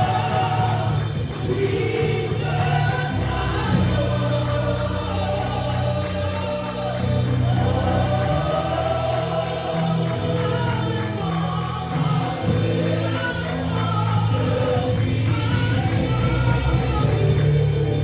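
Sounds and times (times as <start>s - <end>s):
band with bass and drums: 0.0s - 18.0s
voices singing gospel: 0.0s - 18.0s.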